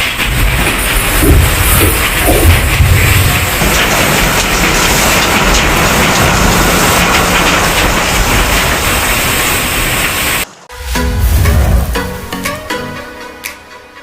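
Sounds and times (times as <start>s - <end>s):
fruit crushing machine running: 0.0s - 10.0s.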